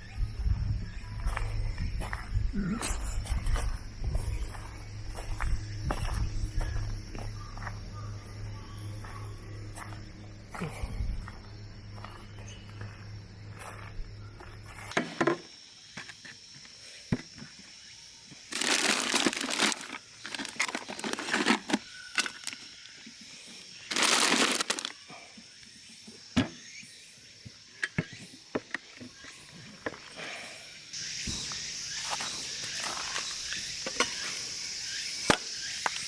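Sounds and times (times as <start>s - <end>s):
crinkling and rustling: 18.5s - 22.7s, 23.9s - 25.0s.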